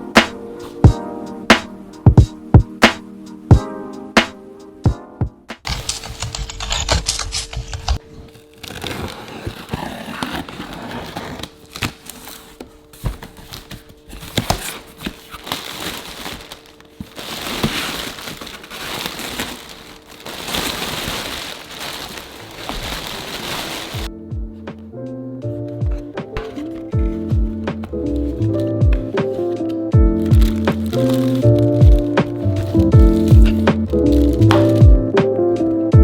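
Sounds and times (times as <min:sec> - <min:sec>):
packaging crinkling and rustling: 0:05.7 - 0:24.1, 0:26.4 - 0:35.2.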